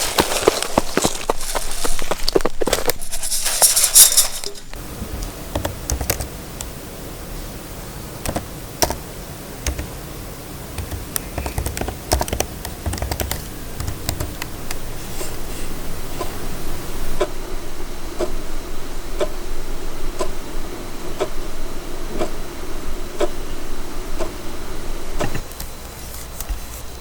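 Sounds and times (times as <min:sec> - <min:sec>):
computer keyboard typing: 0:05.5 - 0:06.7, 0:08.2 - 0:09.0, 0:09.6 - 0:10.0, 0:10.8 - 0:14.8.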